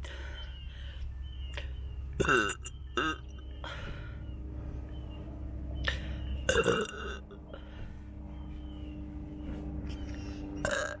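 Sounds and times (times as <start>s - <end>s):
low rumble: 0.0s - 11.0s
person burping: 2.2s - 3.2s, 6.5s - 7.3s, 10.6s - 11.0s.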